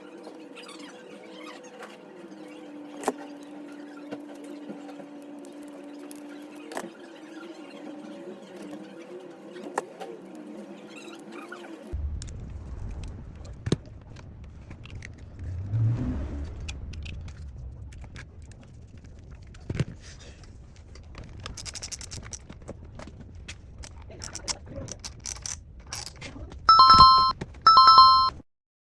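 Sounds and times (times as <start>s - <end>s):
small metal parts clicking and rattling: 16.7s - 22.7s, 23.5s - 26.3s
loud electronic ring: 26.7s - 28.3s.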